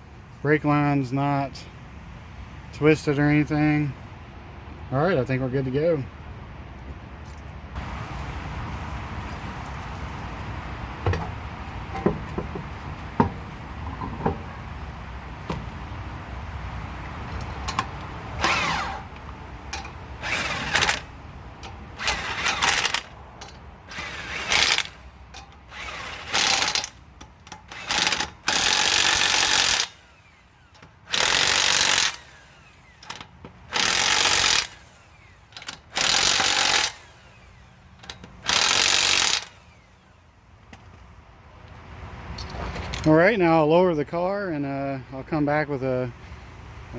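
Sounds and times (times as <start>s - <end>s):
metal clanks and knocks: 11.0s - 14.6s
impact wrench bursts: 17.8s - 40.1s.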